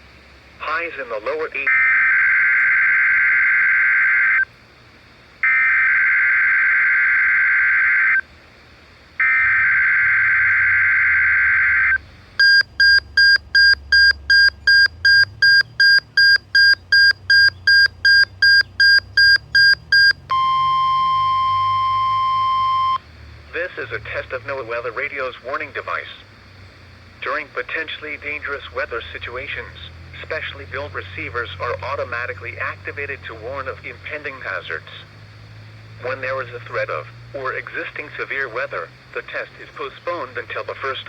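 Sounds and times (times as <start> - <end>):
warbling data tones: 5.4 - 8.2, 9.2 - 23.0
rapid electronic beeps: 9.2 - 23.0
steady single tone: 19.2 - 23.0.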